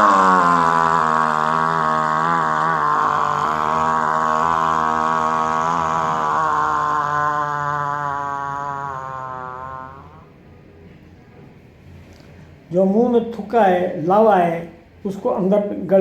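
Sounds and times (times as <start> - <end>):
man holding long aaah: 0.0 - 10.4.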